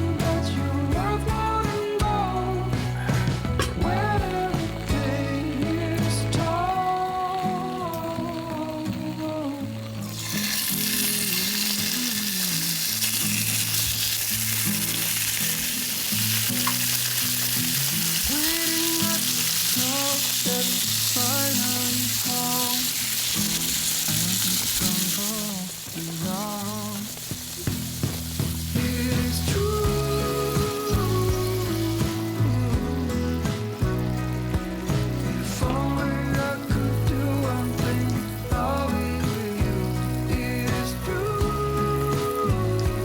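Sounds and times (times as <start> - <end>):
background music with bass: 0.0 - 11.6, 27.0 - 43.0
food sizzling in a pan: 0.0 - 43.0.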